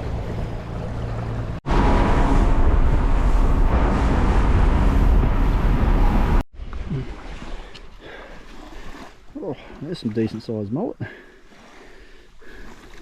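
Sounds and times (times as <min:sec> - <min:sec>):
boat motor running: 0:00.0 - 0:06.4
wind buffeting microphone: 0:00.0 - 0:06.4.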